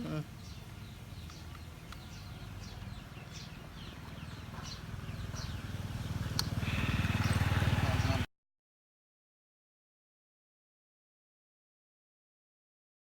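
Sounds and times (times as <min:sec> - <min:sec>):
low motor hum: 0:00.0 - 0:08.3.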